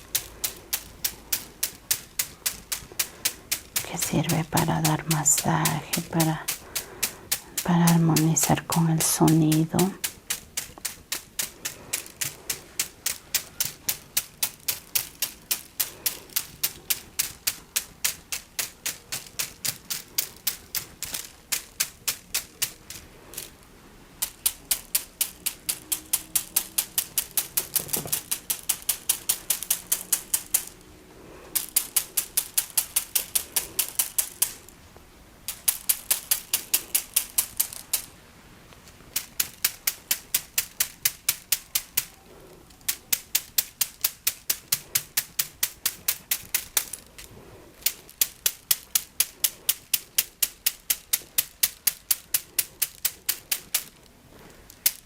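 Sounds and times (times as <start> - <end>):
plant-stem rods clicking: 0.0 - 34.8, 35.4 - 55.0.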